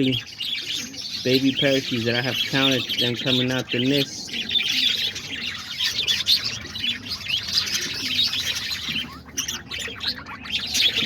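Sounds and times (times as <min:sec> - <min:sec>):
parakeets chattering: 0:00.0 - 0:11.0.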